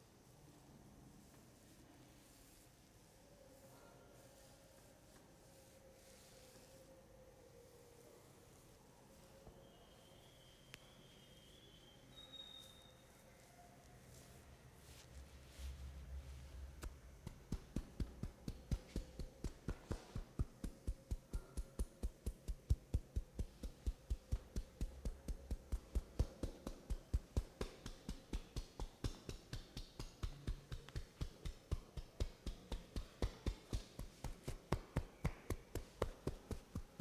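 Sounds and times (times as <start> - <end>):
hands tapping on body: 16.8 - 37.0.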